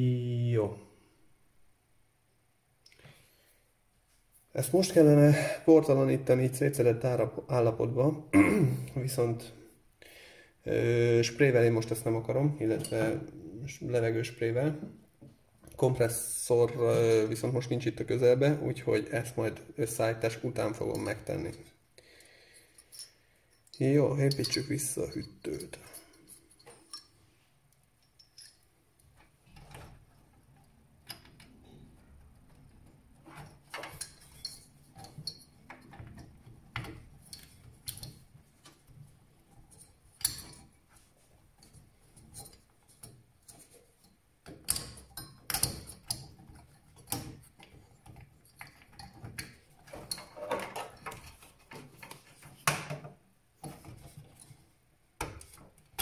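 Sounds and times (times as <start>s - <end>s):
plastic and metal parts clattering: 28.0s - 56.0s.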